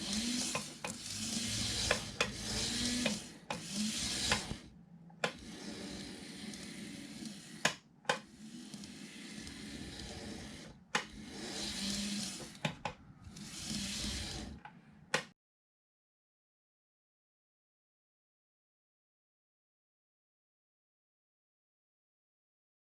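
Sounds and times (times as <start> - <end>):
model train motor whirring: 0.0 - 4.7, 5.3 - 14.6.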